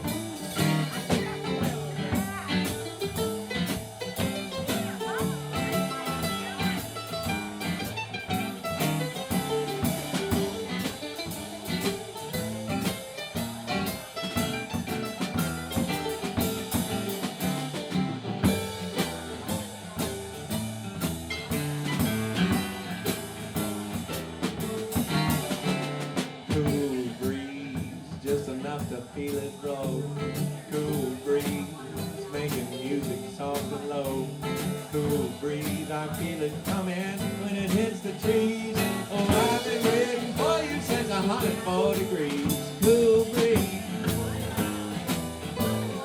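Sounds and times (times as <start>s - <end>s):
drum kit beat: 0.0s - 46.0s
live band playing: 0.0s - 46.0s.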